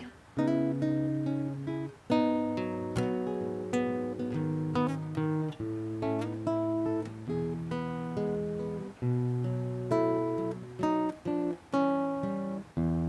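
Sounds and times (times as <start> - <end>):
acoustic guitar chords: 0.0 - 13.0.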